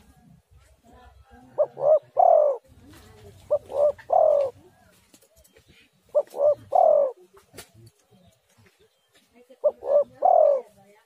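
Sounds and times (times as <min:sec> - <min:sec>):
dove cooing: 0:01.3 - 0:07.4, 0:09.6 - 0:10.8.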